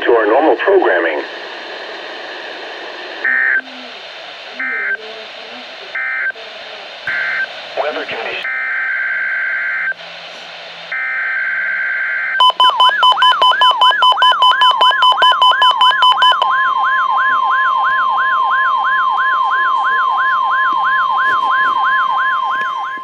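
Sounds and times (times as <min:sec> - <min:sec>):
steady warning alarm tone: 0:05.9 - 0:06.5, 0:07.1 - 0:10.2, 0:10.8 - 0:23.0
digital header burst: 0:12.4 - 0:16.8
harsh rapid beeping: 0:12.4 - 0:17.0.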